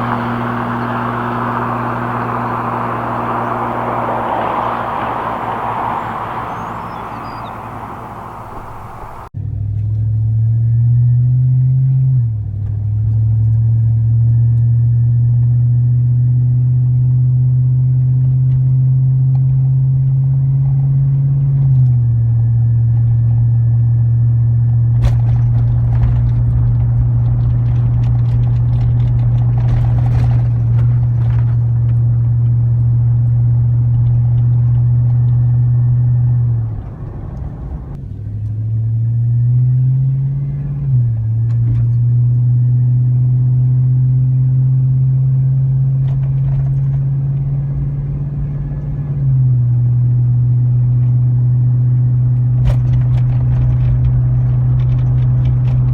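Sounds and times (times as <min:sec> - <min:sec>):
truck exhaust drone: 0:00.0 - 0:55.9.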